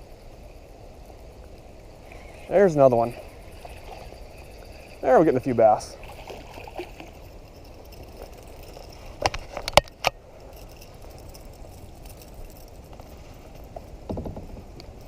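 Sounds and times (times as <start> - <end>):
fishing tackle clicks and knocks: 6.8 - 15.0.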